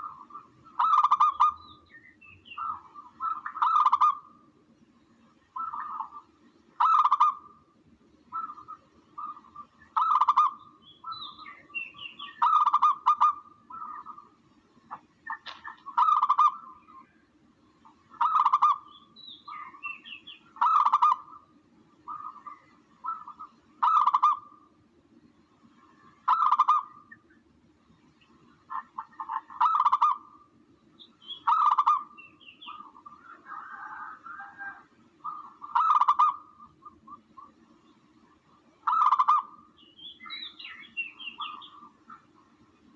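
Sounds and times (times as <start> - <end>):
dove cooing: 0.0 - 1.6, 2.6 - 4.3, 5.6 - 6.2, 8.3 - 14.3, 14.9 - 16.8, 18.1 - 18.9, 26.3 - 27.0, 28.7 - 30.4, 31.4 - 37.5, 38.8 - 39.6
bird chirps: 0.0 - 4.3, 8.3 - 14.3, 17.8 - 24.5, 30.9 - 38.1, 38.8 - 42.4.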